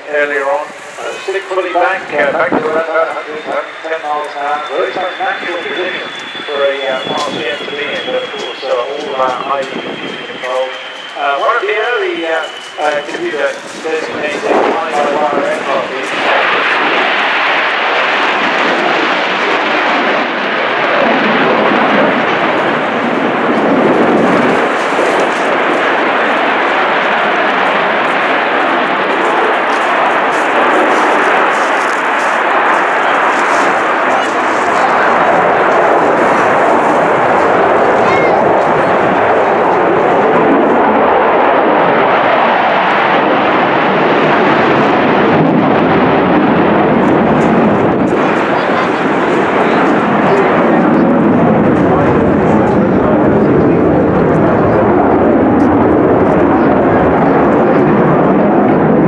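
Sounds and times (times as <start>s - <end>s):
fighter jet engine roar: 0.0s - 59.0s.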